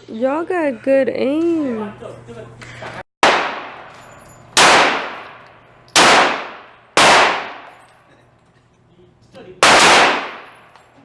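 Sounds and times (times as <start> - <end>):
handgun shots echoing: 3.2 - 4.0, 4.6 - 7.9, 9.6 - 10.8.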